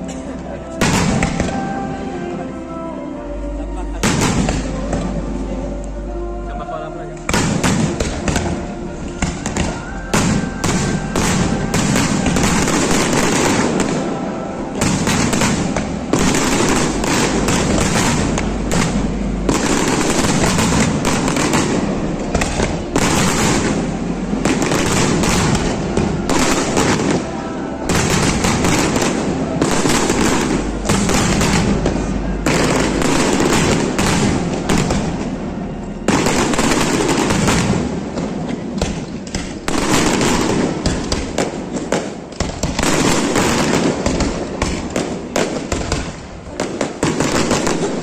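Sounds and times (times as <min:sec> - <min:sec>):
fireworks bangs and crackling: 0:00.0 - 0:02.0, 0:03.8 - 0:05.4, 0:07.2 - 0:48.0.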